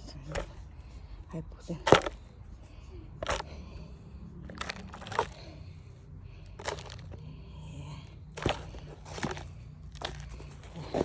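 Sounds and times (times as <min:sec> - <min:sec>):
low steady hum: 0:00.0 - 0:11.0
objects knocking and clattering: 0:01.8 - 0:02.2, 0:04.5 - 0:05.4, 0:06.6 - 0:07.2, 0:08.4 - 0:11.0.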